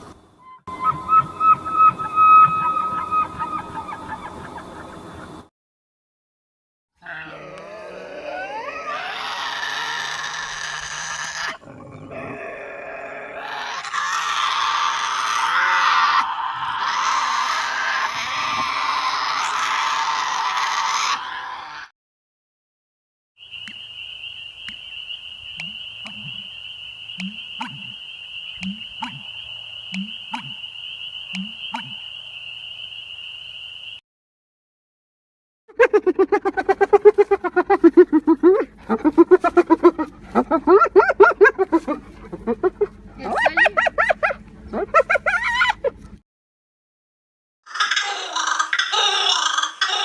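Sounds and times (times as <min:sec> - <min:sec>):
tasmanian devil screeching: 0:07.0 - 0:11.6, 0:12.8 - 0:21.9, 0:47.7 - 0:50.0
sharp click: 0:23.6 - 0:23.8.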